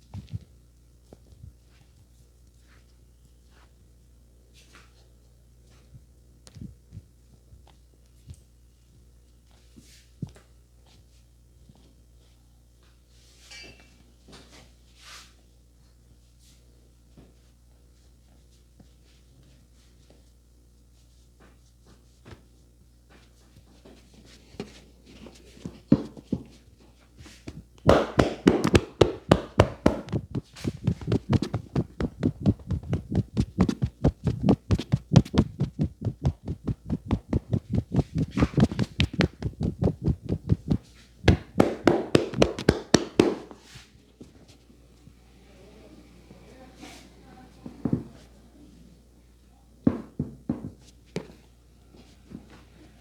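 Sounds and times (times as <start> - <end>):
light taps: 27.5 - 43.3
hands slapping in percussive massage: 27.5 - 43.6.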